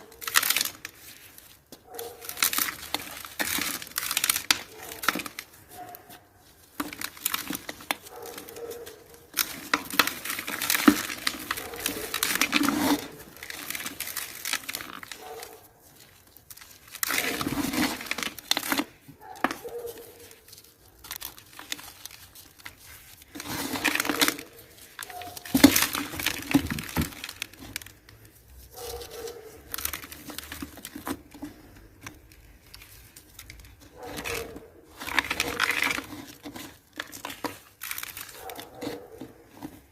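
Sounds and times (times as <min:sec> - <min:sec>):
dry cement crumbling: 0:00.0 - 0:39.9.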